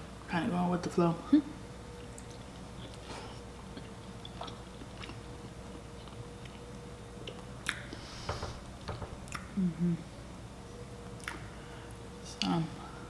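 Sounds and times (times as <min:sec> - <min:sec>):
person chewing food: 0:02.0 - 0:08.0, 0:11.1 - 0:12.0.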